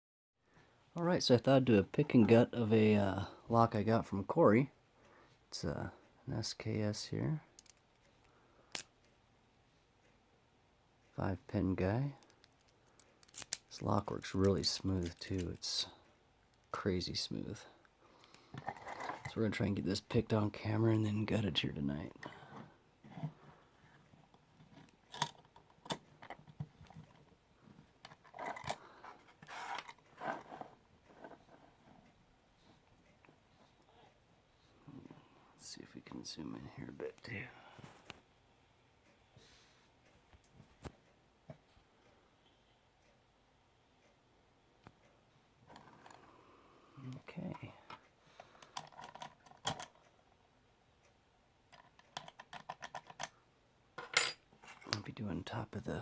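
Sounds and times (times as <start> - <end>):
lock picking tools clinking: 7.6 - 8.0, 12.2 - 15.8.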